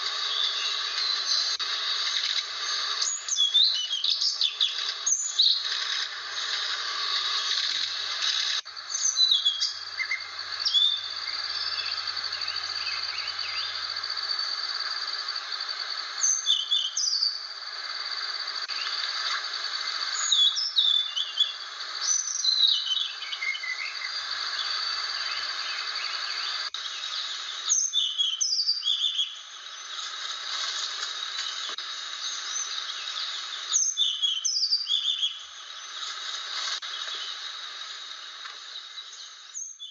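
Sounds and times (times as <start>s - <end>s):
steady high hiss: 0.0s - 39.9s
bird singing high whistles: 3.0s - 5.6s, 8.9s - 14.3s, 16.2s - 17.4s, 20.1s - 29.9s, 32.2s - 35.5s.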